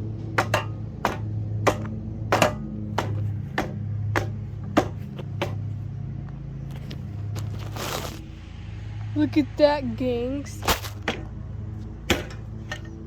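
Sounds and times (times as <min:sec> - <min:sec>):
box fan motor humming: 0:00.0 - 0:07.6.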